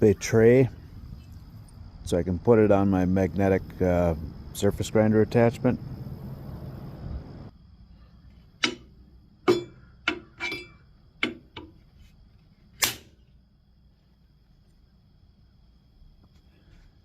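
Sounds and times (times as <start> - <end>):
metal blocks clacking on chuck: 8.6 - 8.9, 9.5 - 11.8.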